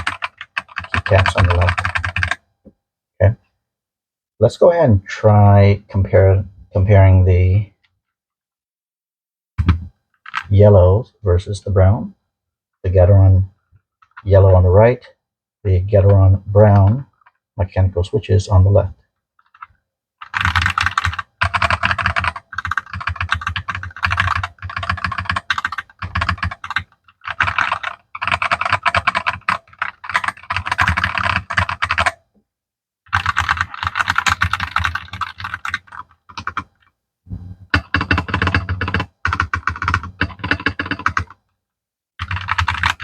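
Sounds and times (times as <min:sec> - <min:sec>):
mechanical keyboard typing: 0:00.0 - 0:02.4, 0:09.6 - 0:10.5, 0:19.4 - 0:32.2, 0:33.1 - 0:36.9, 0:37.7 - 0:41.4, 0:42.2 - 0:43.0.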